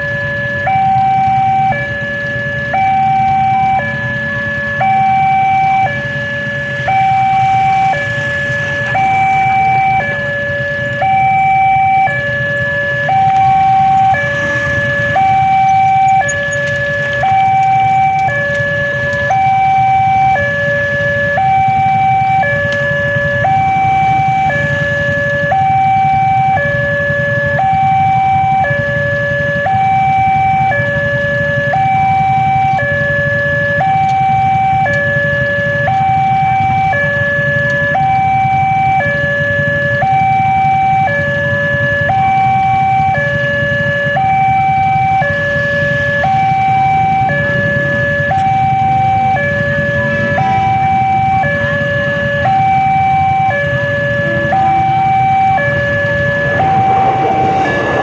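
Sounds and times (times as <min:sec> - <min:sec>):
level crossing two-tone alarm: 0:00.0 - 0:58.0
low rumble: 0:54.3 - 0:58.0.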